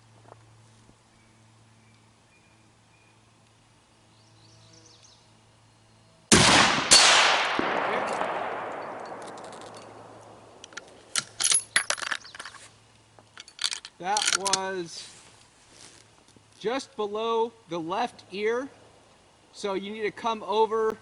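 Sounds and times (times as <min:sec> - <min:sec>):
rifle shot with echo: 0:06.3 - 0:10.7
sharp crack: 0:06.3 - 0:11.4
metallic clicks: 0:08.1 - 0:12.6, 0:13.3 - 0:14.7.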